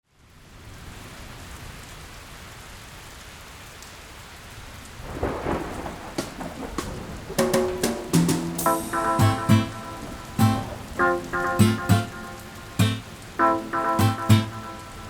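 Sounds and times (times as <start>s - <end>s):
steady rain: 0.0s - 15.0s
thunder rumbling: 5.0s - 15.0s
sharp hits: 6.2s - 13.2s.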